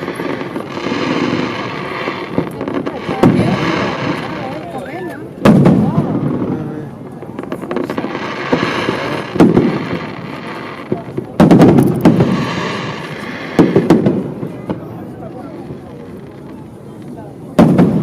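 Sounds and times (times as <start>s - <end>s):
firework bangs with echoing rumble: 0.0s - 18.0s
firework crackling: 0.0s - 18.0s.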